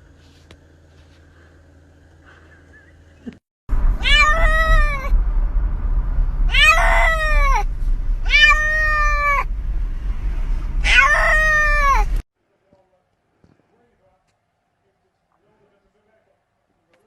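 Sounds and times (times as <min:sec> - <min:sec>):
steady low rumble: 0:03.7 - 0:12.2
cat meowing loudly: 0:04.0 - 0:05.1, 0:06.5 - 0:09.5, 0:10.8 - 0:12.2.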